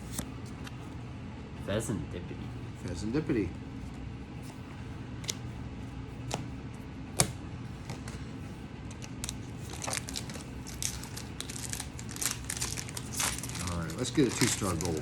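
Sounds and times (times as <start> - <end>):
steady low hum: 0.0 - 15.0
trading cards clicking and rustling: 8.9 - 15.0.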